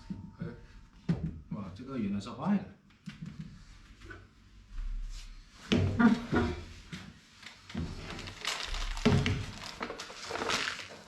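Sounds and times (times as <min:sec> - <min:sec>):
rustling: 0:07.8 - 0:11.0.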